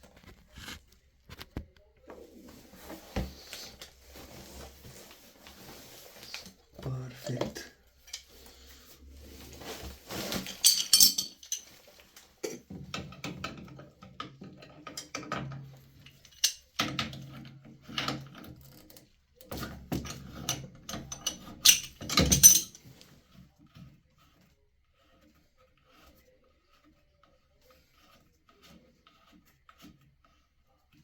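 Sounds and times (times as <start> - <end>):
hand tools clinking on metal pipe: 10.4 - 11.8, 16.2 - 17.0, 20.9 - 22.8.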